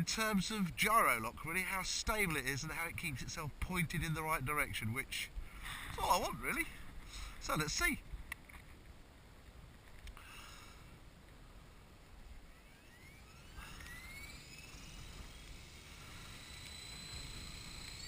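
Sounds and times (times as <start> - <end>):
helicopter motor whine: 12.3 - 18.0.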